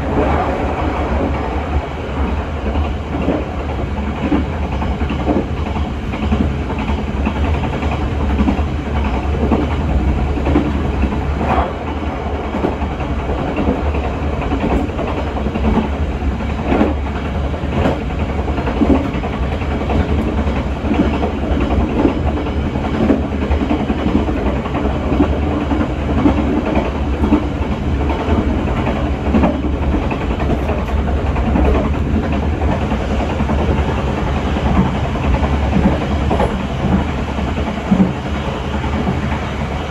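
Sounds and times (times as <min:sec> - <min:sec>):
train wheels rumbling on rails: 0:00.0 - 0:39.9
wheels clacking over rail joints: 0:02.3 - 0:39.9.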